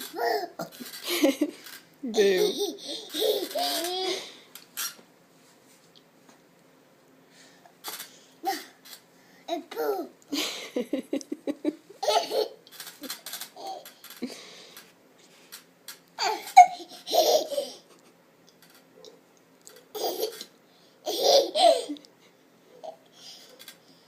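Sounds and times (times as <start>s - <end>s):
toddler laughing: 0.0s - 1.3s, 2.1s - 4.4s, 9.5s - 10.1s, 12.0s - 13.9s, 16.2s - 18.1s, 19.9s - 22.1s.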